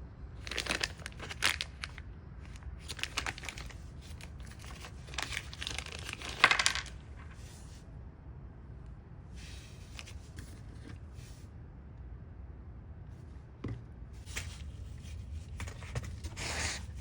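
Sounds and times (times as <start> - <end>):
crinkling and rustling: 0.4 - 7.8, 9.4 - 11.2, 13.7 - 17.0.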